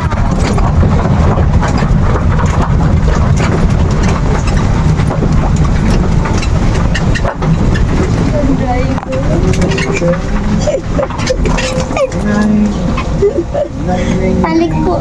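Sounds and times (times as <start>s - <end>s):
bus engine rumble: 0.0s - 15.0s
rattling and clatter: 0.0s - 15.0s.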